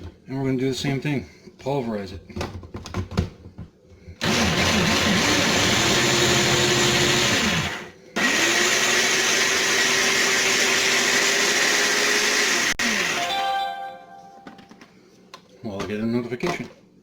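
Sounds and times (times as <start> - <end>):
food processor motor: 4.2 - 13.3.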